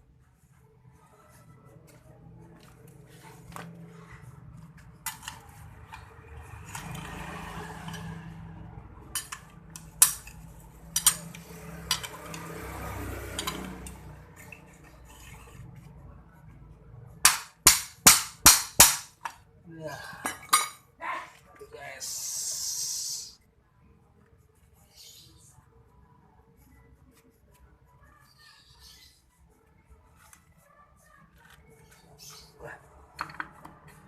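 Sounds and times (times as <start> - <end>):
metal tools clinking and scraping: 9.1 - 12.5, 13.3 - 15.7, 20.2 - 20.8.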